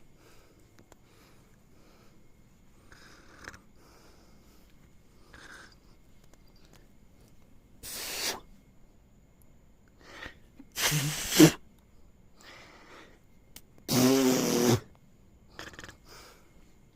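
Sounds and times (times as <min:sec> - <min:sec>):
lips blowing buzzing raspberries: 0:07.8 - 0:08.5, 0:10.1 - 0:11.6, 0:13.9 - 0:14.9, 0:15.5 - 0:16.1.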